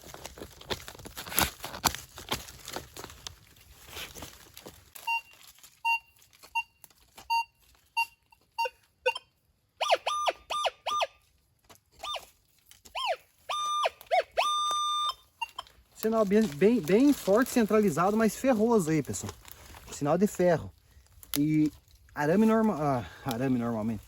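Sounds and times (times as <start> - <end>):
metal detector beeps: 5.0 - 11.2, 12.0 - 12.3, 13.0 - 15.7
metal detector swooping tones: 9.8 - 11.2, 12.0 - 12.2, 13.0 - 15.6.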